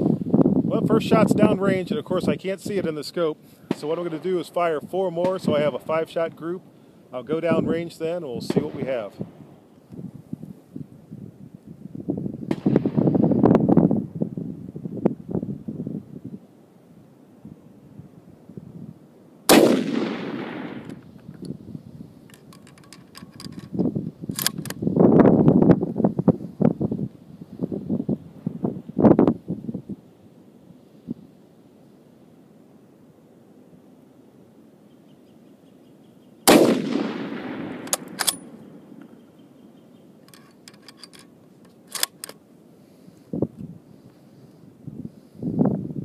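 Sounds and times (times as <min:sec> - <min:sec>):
wind buffeting microphone: 0:00.0 - 0:03.0, 0:03.8 - 0:06.0, 0:07.2 - 0:16.4, 0:19.6 - 0:30.1, 0:43.2 - 0:46.0
rifle shot: 0:03.7 - 0:04.4, 0:08.4 - 0:09.4, 0:12.5 - 0:13.4, 0:19.5 - 0:21.1, 0:36.4 - 0:38.8
sharp metallic clicks: 0:22.3 - 0:24.8, 0:37.7 - 0:39.2, 0:40.2 - 0:42.4.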